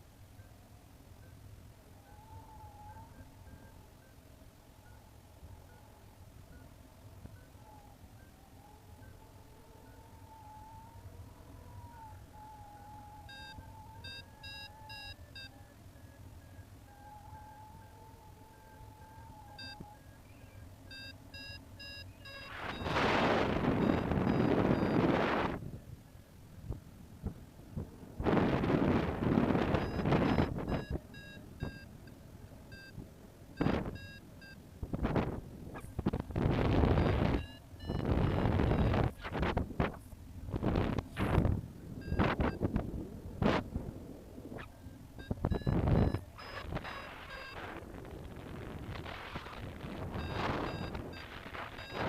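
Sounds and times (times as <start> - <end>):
steady wavering tone: 0.0 - 39.4
variometer short beeps: 13.2 - 16.6, 19.0 - 25.2, 29.6 - 33.0, 33.6 - 34.6, 36.6 - 39.2, 42.0 - 42.7, 44.6 - 47.8, 49.4 - 52.0
wind on microphone: 22.4 - 26.0, 26.6 - 31.8, 32.9 - 34.1, 34.8 - 52.0.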